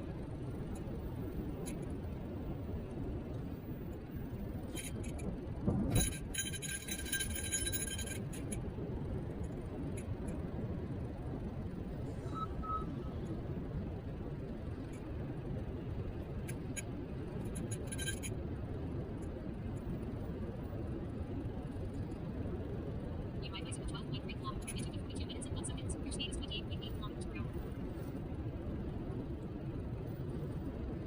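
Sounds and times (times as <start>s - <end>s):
wind and road noise: 0.0s - 31.0s.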